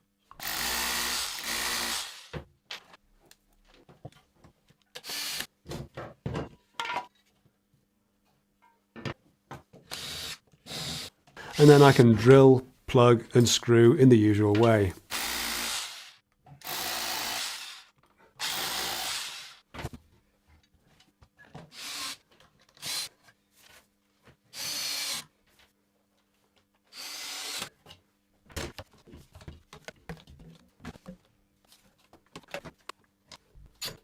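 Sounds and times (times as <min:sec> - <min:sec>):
drill boring into brick: 0:00.4 - 0:02.4, 0:05.0 - 0:05.5, 0:09.9 - 0:12.0, 0:15.1 - 0:19.6, 0:21.7 - 0:22.2, 0:24.6 - 0:25.2, 0:26.9 - 0:27.7.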